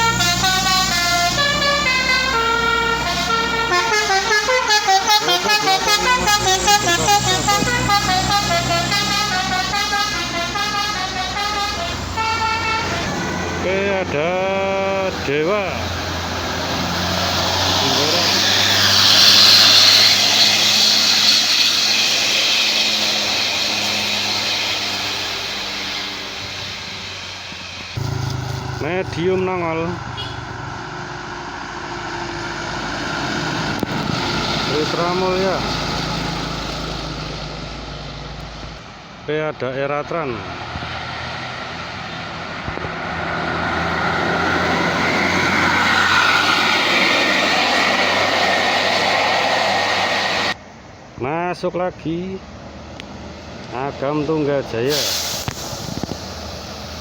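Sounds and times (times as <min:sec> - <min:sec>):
bus diesel engine running: 0:00.0 - 0:51.2, 0:52.2 - 0:57.0.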